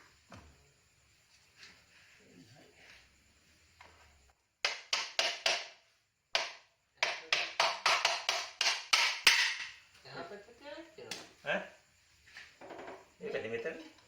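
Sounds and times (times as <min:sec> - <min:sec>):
hammer tapping metal: 0:06.4 - 0:09.7.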